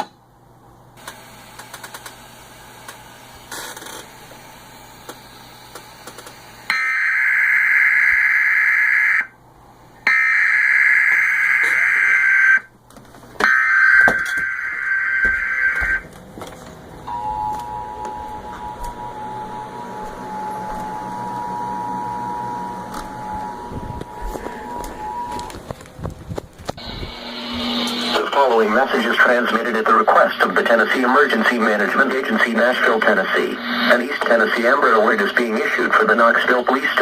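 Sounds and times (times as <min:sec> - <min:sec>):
screeching digital data tones: 0:06.7 - 0:09.3, 0:10.1 - 0:12.7, 0:13.5 - 0:16.0, 0:17.4 - 0:25.6
two-tone attention signal: 0:17.1 - 0:25.6.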